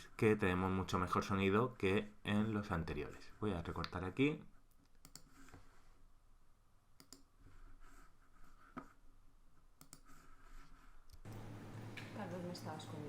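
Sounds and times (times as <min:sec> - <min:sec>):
computer mouse clicks: 0:04.7 - 0:05.6, 0:07.0 - 0:07.3, 0:09.8 - 0:10.2.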